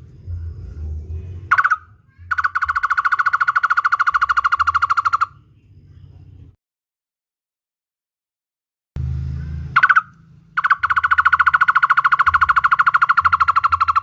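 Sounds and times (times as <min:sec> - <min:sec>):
low hum: 0:00.0 - 0:06.6
bird calling with fast trill: 0:01.5 - 0:05.4, 0:09.7 - 0:14.0.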